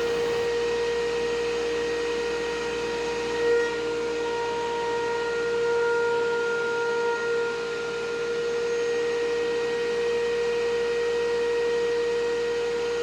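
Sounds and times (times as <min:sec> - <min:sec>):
thickness planer whining: 0:00.0 - 0:00.5.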